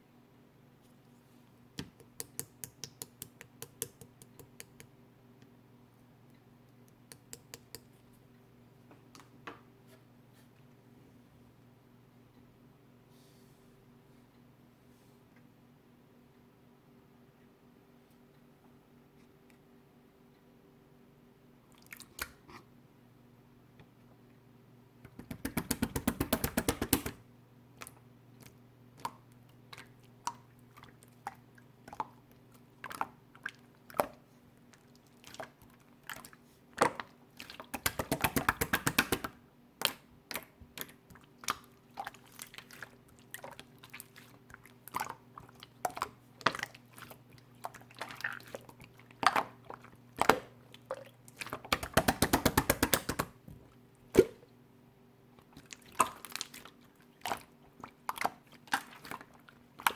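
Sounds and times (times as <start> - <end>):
fast crackling of slime: 25.2 - 27.2, 37.4 - 40.5, 51.3 - 53.4.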